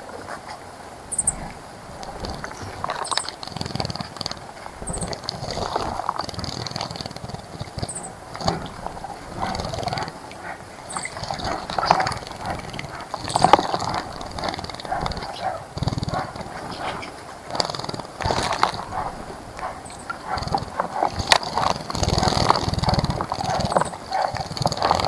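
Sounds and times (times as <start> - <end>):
bird chirping high: 1.1 - 1.5, 19.7 - 21.2
thin bird calls: 1.1 - 3.4, 4.8 - 5.2, 7.8 - 10.1, 10.8 - 25.0.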